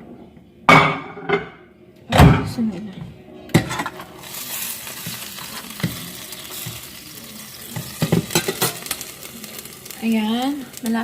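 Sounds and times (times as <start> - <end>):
batter sizzling in a frying pan: 3.7 - 11.0.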